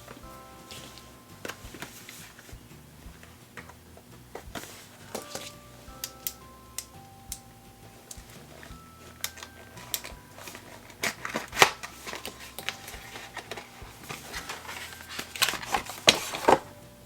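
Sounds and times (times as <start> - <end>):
cardboard packaging rustling and clicking: 0.0 - 6.4, 8.0 - 17.0
packaging scraping: 8.3 - 16.8.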